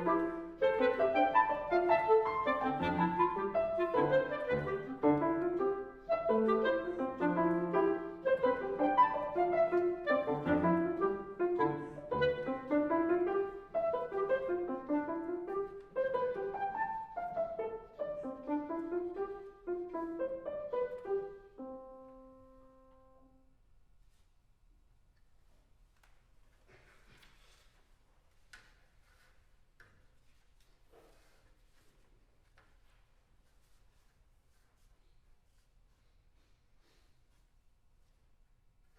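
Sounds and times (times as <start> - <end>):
clarinet: 0.0 - 23.4
piano: 0.0 - 23.6.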